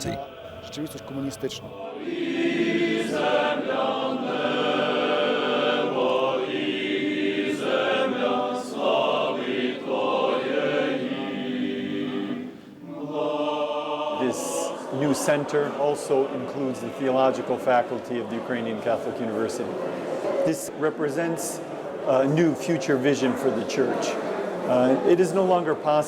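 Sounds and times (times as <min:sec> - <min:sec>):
choir singing long notes: 0:00.0 - 0:20.3.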